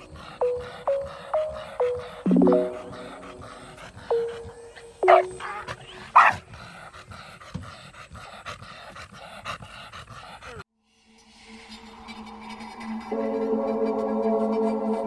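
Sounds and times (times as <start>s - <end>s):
quick rhythmic sounds: 0.0s - 6.3s
dog barking: 5.1s - 6.4s.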